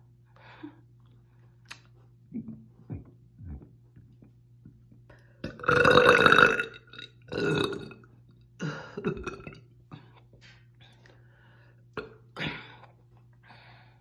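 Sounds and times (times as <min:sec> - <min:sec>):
woman burping: 0:05.4 - 0:08.0, 0:08.6 - 0:09.7, 0:12.0 - 0:12.9.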